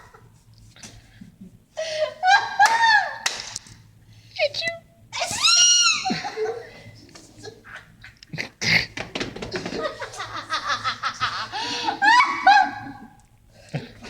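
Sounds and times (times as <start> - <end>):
woman laughing: 1.8 - 3.2, 5.9 - 7.6, 9.6 - 13.2.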